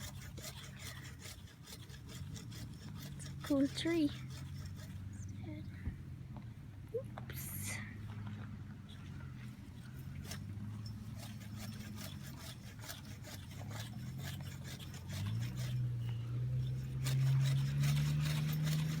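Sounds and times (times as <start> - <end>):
handsaw rasping through wood: 0.0 - 5.1, 9.8 - 19.0.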